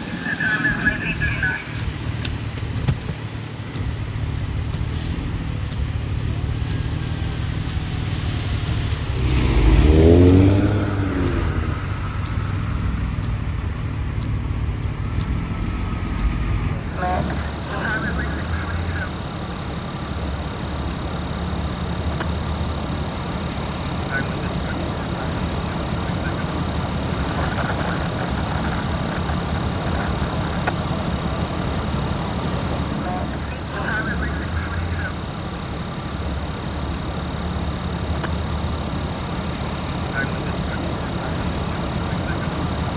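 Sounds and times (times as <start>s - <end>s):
low engine rumble: 0.0s - 42.9s
vehicle driving past: 3.4s - 19.2s.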